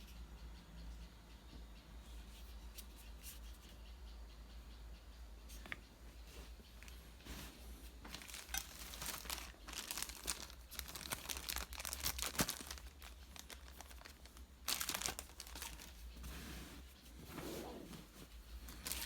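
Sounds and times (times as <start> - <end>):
packaging crinkling and rustling: 8.1 - 16.1, 18.7 - 19.0.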